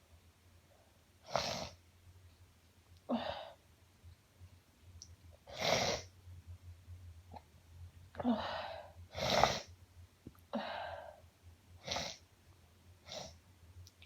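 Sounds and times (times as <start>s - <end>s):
woman gasping breaths: 8.2s - 9.7s, 10.5s - 11.2s.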